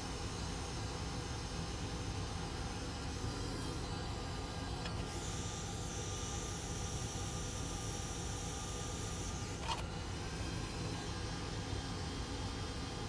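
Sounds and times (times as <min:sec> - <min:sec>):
small motor humming: 0:03.3 - 0:13.0.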